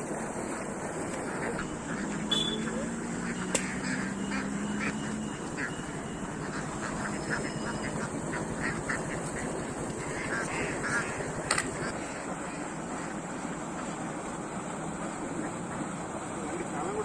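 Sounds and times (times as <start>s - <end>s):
ducks quacking: 0.0s - 14.3s
steady background rumble: 5.0s - 17.0s.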